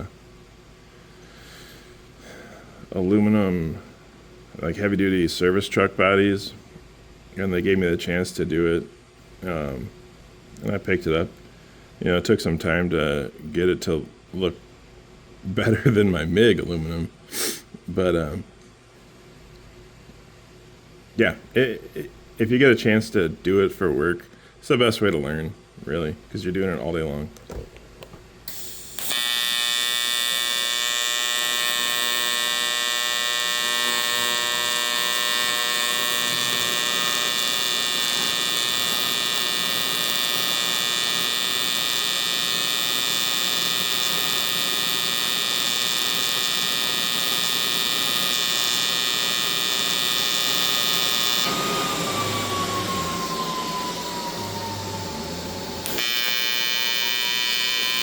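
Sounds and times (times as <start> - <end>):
welding arc buzzing: 28.4 - 58.0
welding hiss: 28.5 - 58.0.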